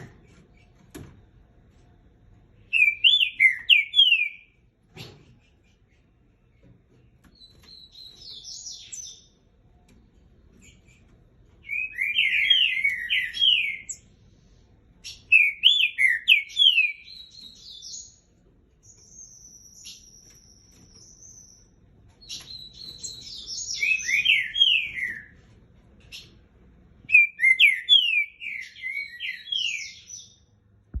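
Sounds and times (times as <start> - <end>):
bird singing whistled notes: 2.7 - 4.6, 11.6 - 14.0, 15.0 - 18.2, 18.8 - 25.3, 27.1 - 30.4.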